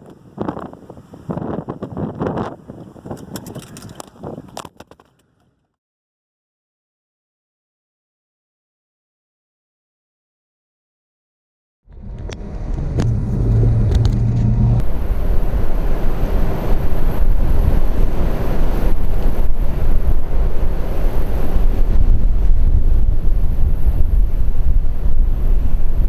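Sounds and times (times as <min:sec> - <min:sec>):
wind noise on microphone: 0:00.0 - 0:05.0, 0:11.9 - 0:26.0
vehicle engine hum: 0:11.9 - 0:20.7.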